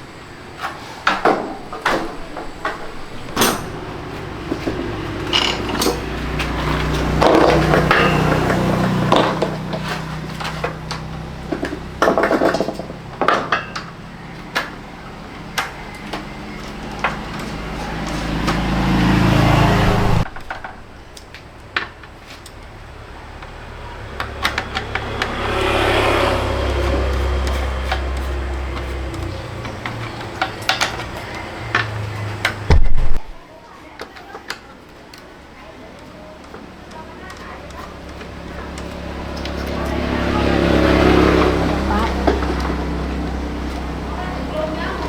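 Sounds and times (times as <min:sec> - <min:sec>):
metal tools clinking: 0:00.6 - 0:11.2
low motor hum: 0:01.6 - 0:12.0, 0:15.0 - 0:21.3, 0:23.1 - 0:33.4.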